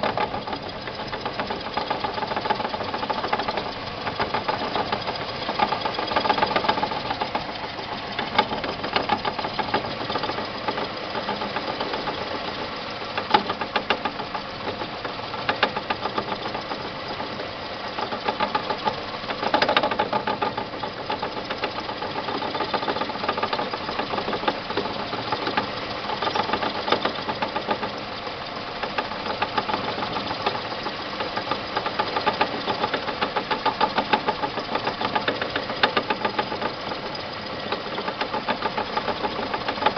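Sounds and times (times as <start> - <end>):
car engine knocking and clicking: 0.0 - 39.9.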